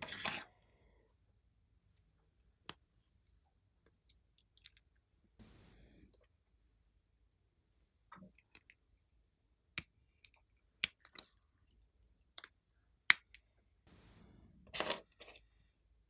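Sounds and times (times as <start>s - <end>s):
soft crackle: 5.4s - 6.3s, 13.9s - 15.7s.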